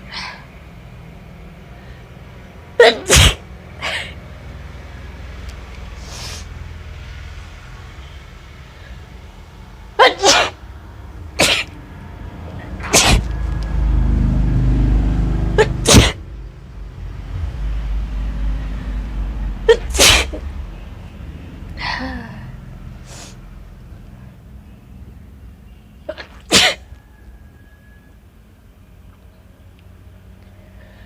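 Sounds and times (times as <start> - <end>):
woman sneezing: 2.8 - 4.0, 10.0 - 10.6, 12.8 - 13.3, 15.6 - 16.2, 19.7 - 20.4, 26.1 - 26.8.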